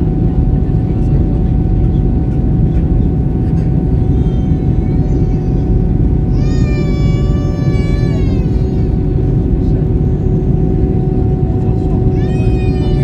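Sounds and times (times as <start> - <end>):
airliner cabin roar: 0.0 - 13.0
faint hum: 3.1 - 13.0.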